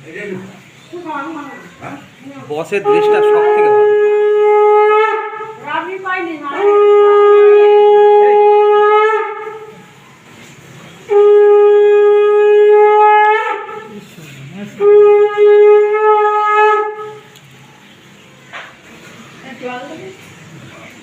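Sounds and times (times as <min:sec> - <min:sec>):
conch shell blasts: 0:02.8 - 0:05.7, 0:06.6 - 0:09.9, 0:11.1 - 0:13.9, 0:14.8 - 0:17.3.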